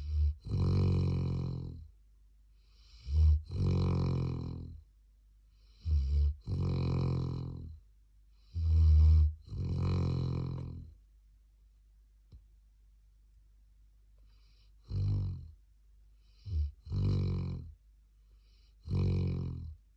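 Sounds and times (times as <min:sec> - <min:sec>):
dog snoring: 0:00.0 - 0:01.9, 0:02.6 - 0:04.8, 0:05.5 - 0:07.8, 0:08.4 - 0:11.0, 0:14.3 - 0:15.6, 0:16.2 - 0:17.8, 0:18.4 - 0:19.8.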